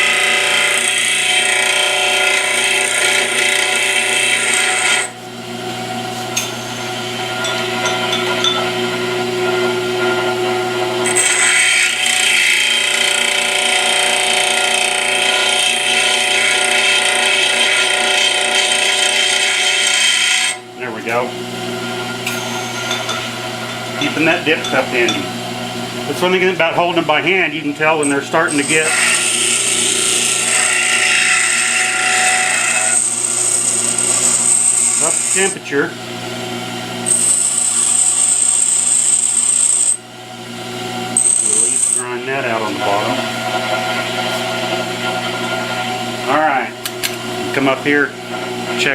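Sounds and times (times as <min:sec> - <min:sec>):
bench grinder grinding metal: 0:00.0 - 0:05.2, 0:06.1 - 0:25.4, 0:26.2 - 0:40.0, 0:40.8 - 0:48.9
grinder grinding tool bit: 0:28.0 - 0:35.6, 0:37.1 - 0:40.0, 0:41.1 - 0:42.2.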